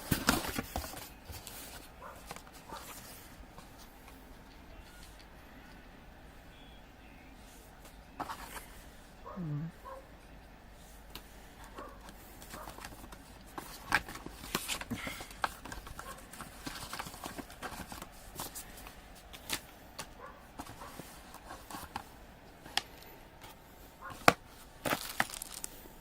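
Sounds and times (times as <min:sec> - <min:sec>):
hands unpacking a cardboard box: 0:00.0 - 0:03.9, 0:11.7 - 0:25.8
packaging rustling: 0:00.0 - 0:04.2, 0:11.7 - 0:23.0, 0:24.0 - 0:26.0.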